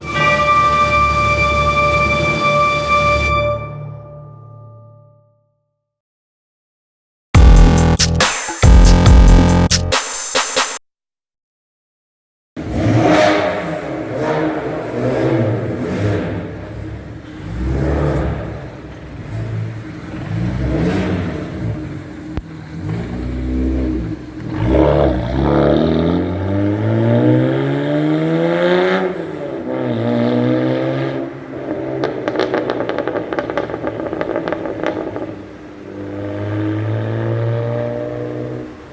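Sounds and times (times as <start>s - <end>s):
car engine revving: 7.4s - 10.0s, 12.6s - 38.9s.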